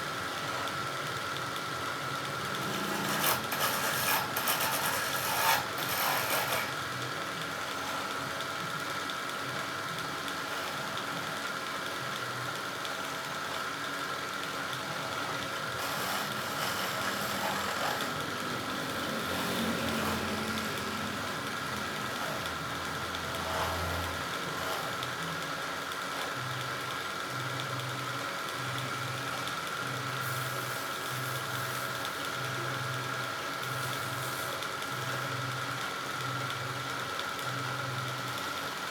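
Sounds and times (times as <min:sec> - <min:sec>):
wood lathe motor humming: 0:02.0 - 0:08.4, 0:09.4 - 0:12.2, 0:14.4 - 0:26.7
turning tool scraping wood: 0:02.4 - 0:06.8, 0:10.4 - 0:11.0, 0:15.0 - 0:25.1.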